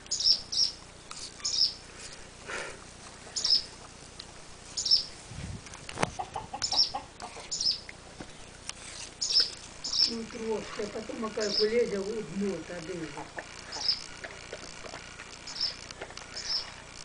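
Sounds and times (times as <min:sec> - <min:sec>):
small bird chirping: 0:00.0 - 0:01.8, 0:03.3 - 0:03.8, 0:04.7 - 0:05.2, 0:06.3 - 0:12.3, 0:13.6 - 0:16.8.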